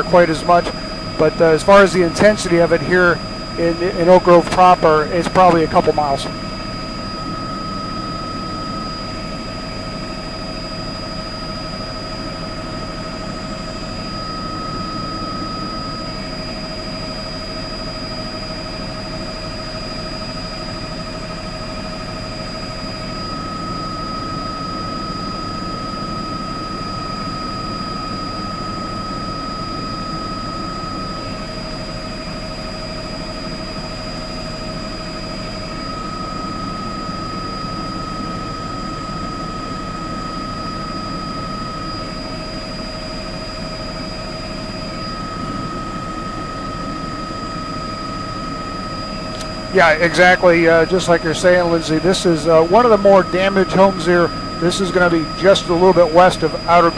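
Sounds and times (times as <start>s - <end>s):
high whine switching pitch: 0.0s - 16.6s, 43.5s - 56.9s
helicopter engine and rotor: 0.0s - 56.9s.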